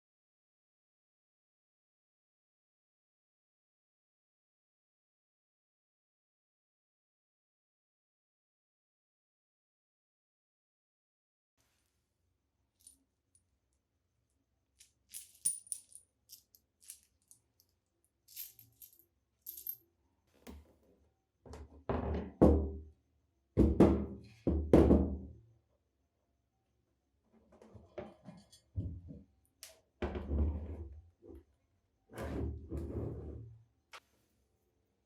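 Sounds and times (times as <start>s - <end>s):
small metal parts clinking: 14.8s - 19.8s.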